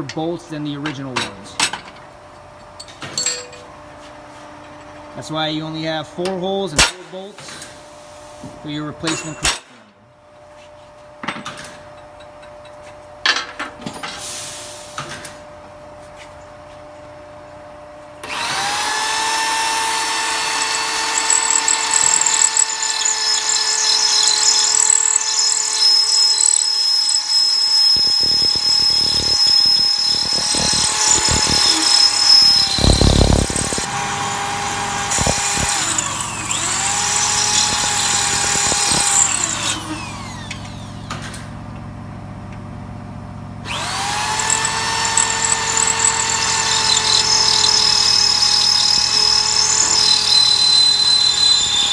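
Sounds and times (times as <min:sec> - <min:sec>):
drill bit chattering: 0:18.2 - 0:40.9, 0:43.7 - 0:51.9
electric drill whining: 0:18.2 - 0:41.3, 0:43.7 - 0:51.9.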